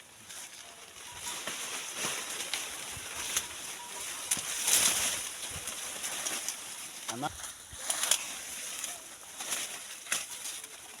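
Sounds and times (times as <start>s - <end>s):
dry maize leaves rustling: 0.0s - 11.0s
stalks snapping: 7.8s - 10.8s.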